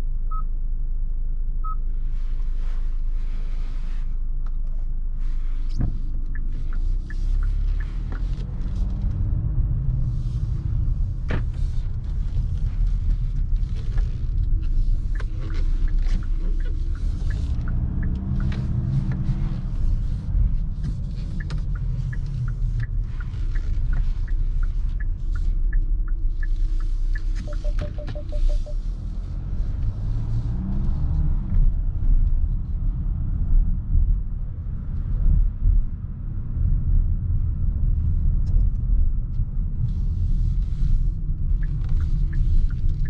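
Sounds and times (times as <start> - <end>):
car engine and road noise: 0.0 - 43.0
light regular ticks: 6.1 - 10.8, 11.4 - 28.9, 39.8 - 43.0.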